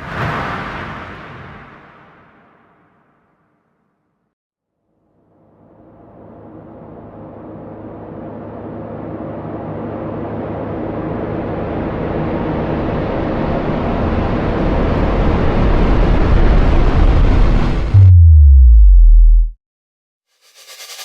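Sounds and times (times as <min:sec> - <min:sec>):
rumbling hissing riser effect: 0:20.4 - 0:21.0.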